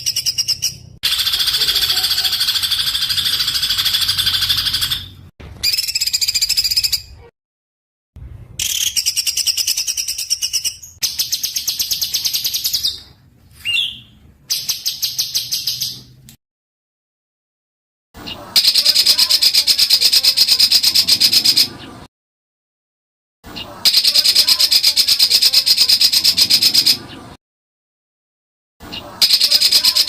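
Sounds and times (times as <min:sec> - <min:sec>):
songbird trilling: 0:00.0 - 0:05.1.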